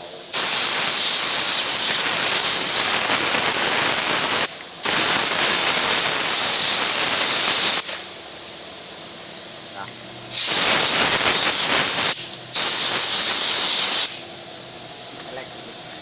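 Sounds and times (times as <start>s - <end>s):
water spray hissing: 0.3s - 8.1s, 10.3s - 14.3s.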